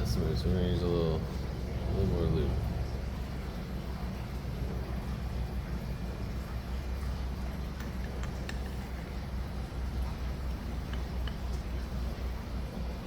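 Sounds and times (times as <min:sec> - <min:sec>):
workshop hum: 0:00.0 - 0:13.0
faint clicks of engine parts: 0:07.8 - 0:08.8, 0:10.8 - 0:11.6.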